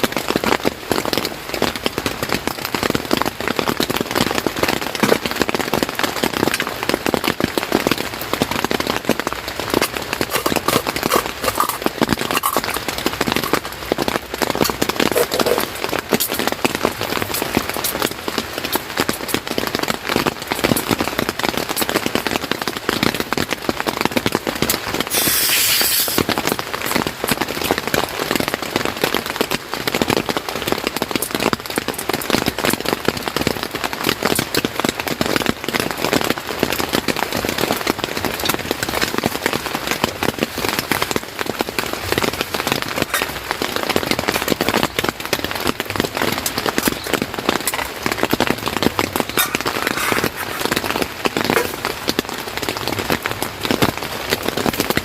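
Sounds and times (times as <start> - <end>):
heavy rain pattering: 0.0 - 55.0
louder hiss: 25.1 - 26.2.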